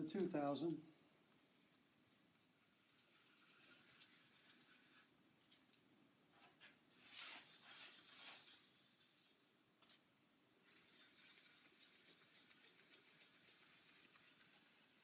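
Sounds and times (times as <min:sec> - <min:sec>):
faint steady hiss: 0:00.0 - 0:15.0
wet sandpaper rubbing: 0:10.7 - 0:15.0.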